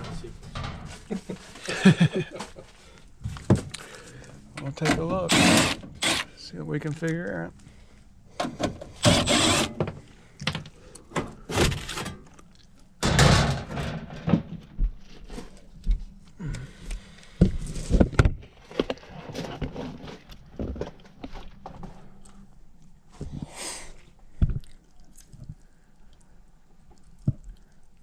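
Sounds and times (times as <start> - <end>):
knocks clunks and scrapes: 0.0 - 1.7, 8.4 - 12.3, 13.0 - 15.6, 17.4 - 22.0.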